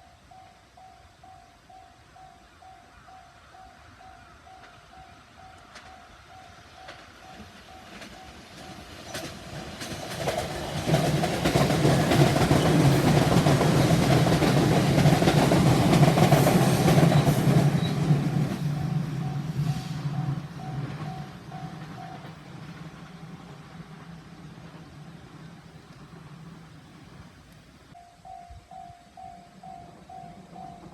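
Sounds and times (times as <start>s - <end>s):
level-crossing warning bell: 0.0s - 11.6s, 12.2s - 22.4s, 27.9s - 30.9s
low train drone: 0.0s - 30.9s
train wheels on rails: 0.0s - 30.9s.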